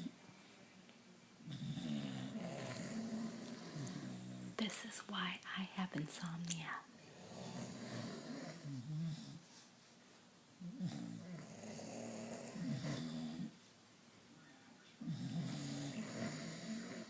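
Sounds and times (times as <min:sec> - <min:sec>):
person snoring: 0:01.5 - 0:04.6, 0:15.0 - 0:17.0.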